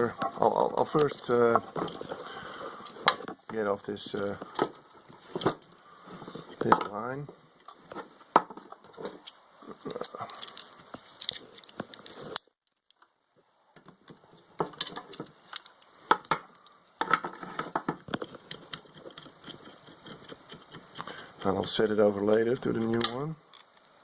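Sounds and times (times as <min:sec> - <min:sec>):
hand tool clicks and metal knocks: 0:13.8 - 0:23.9.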